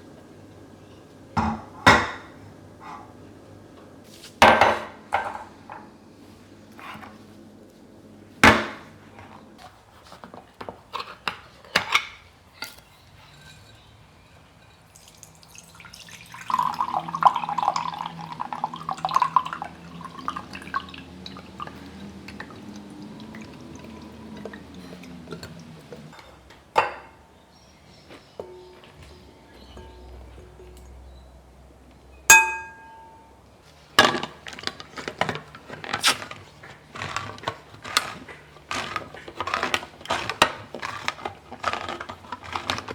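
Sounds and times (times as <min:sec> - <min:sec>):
liquid pouring into a container: 0:14.8 - 0:26.0
dishes or utensils knocking: 0:32.3 - 0:33.3.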